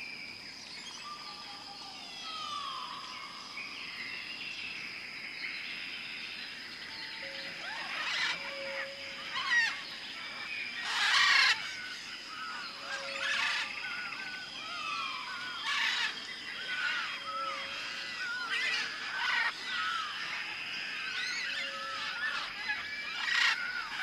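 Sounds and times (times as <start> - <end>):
insect drone: 0.0 - 24.0
birds chirping and calling: 6.9 - 24.0
harsh noisy bird calls: 7.2 - 24.0.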